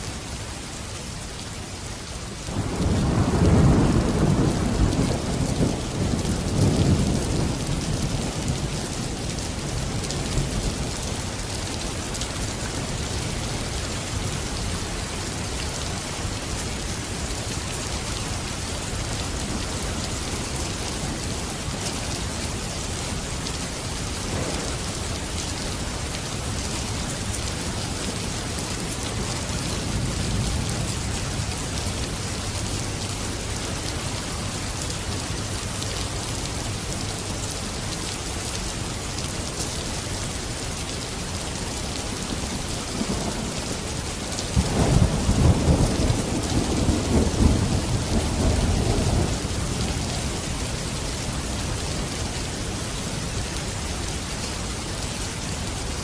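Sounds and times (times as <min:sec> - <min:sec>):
steady rain falling: 0:00.0 - 0:56.0
thunder rumbling: 0:24.3 - 0:25.3, 0:44.5 - 0:49.8.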